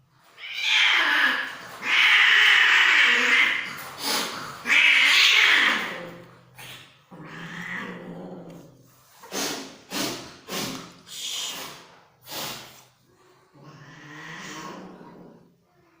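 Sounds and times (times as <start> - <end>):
cat growling: 0.4 - 8.9, 13.4 - 15.7.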